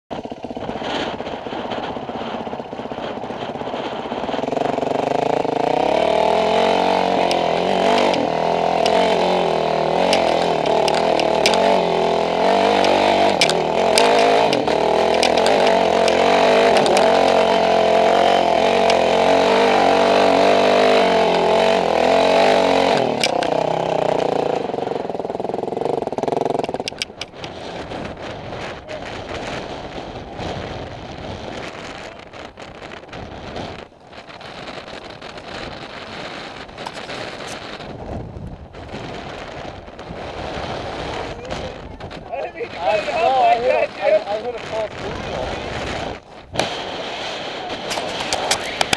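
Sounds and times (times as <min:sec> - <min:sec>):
off-road vehicle engine under load: 0:00.1 - 0:48.9
sharp clicks: 0:07.0 - 0:23.7, 0:26.4 - 0:27.6.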